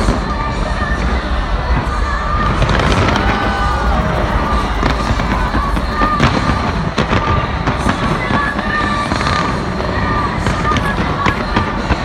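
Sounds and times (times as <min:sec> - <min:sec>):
low rumble: 0:00.0 - 0:09.6
fireworks whistling: 0:00.0 - 0:11.8
fireworks bangs and crackles: 0:00.0 - 0:12.0.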